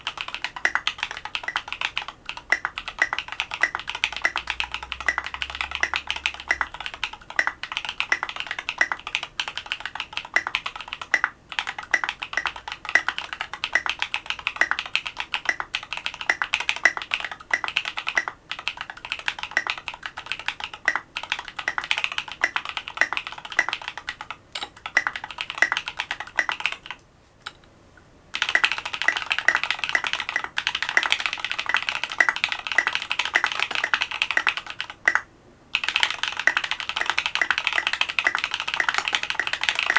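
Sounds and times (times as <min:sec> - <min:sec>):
fast mechanical keyboard typing: 0:00.0 - 0:27.0, 0:28.3 - 0:39.9.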